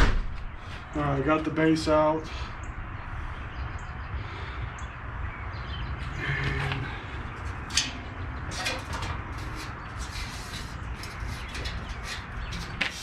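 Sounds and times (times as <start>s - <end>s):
metal grill parts clanking: 6.0s - 13.0s.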